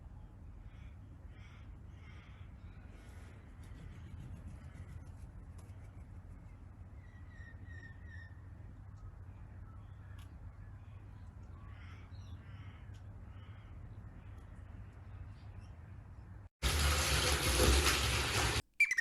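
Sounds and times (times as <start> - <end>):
distant crows cawing: 0.6 - 3.1, 11.4 - 14.4.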